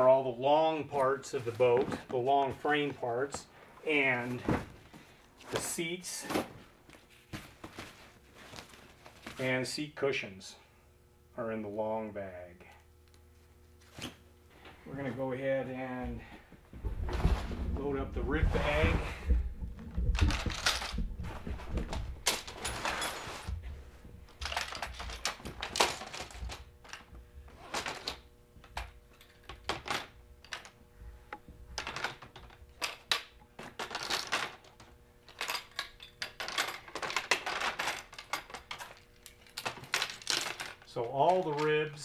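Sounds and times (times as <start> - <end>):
frame parts clicking and knocking: 16.8 - 30.8, 31.4 - 42.0.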